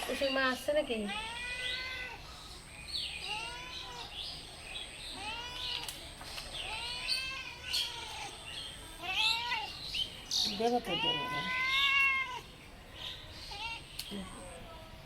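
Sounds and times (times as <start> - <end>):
kittens meowing: 0.2 - 2.2, 3.2 - 4.2, 5.1 - 6.0, 6.6 - 9.9, 10.5 - 12.5.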